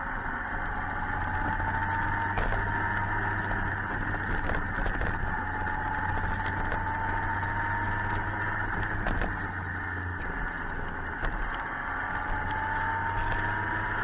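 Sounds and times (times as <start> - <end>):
faint steady whine: 0.0 - 14.0
motorcycle engine: 0.0 - 14.0
wind noise: 0.0 - 14.0.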